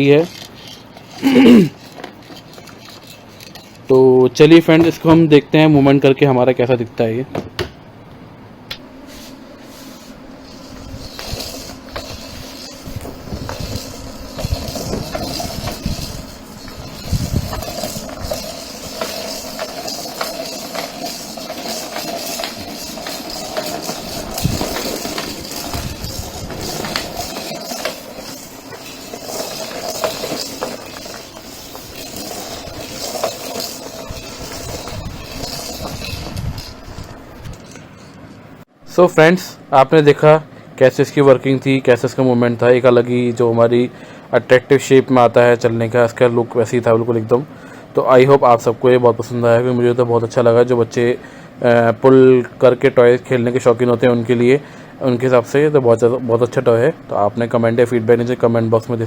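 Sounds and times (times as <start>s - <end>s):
toy rattle clattering: 0.0s - 4.0s, 10.4s - 38.1s
toy wheels rolling: 0.0s - 5.1s, 9.8s - 38.2s.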